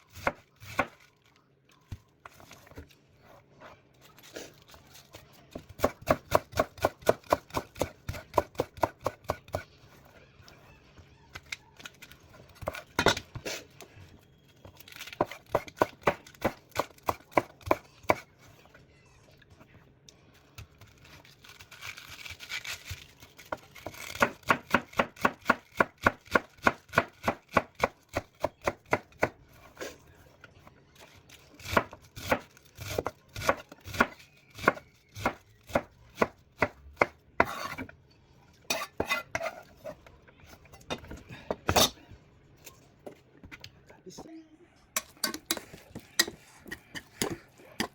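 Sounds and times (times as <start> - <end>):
knife chopping on a cutting board: 5.5 - 9.6, 23.8 - 29.4, 31.6 - 37.9, 45.0 - 47.9.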